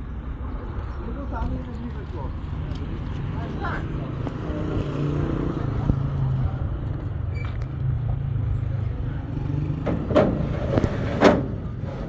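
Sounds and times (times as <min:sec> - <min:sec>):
sharp knocks: 0:09.8 - 0:11.7.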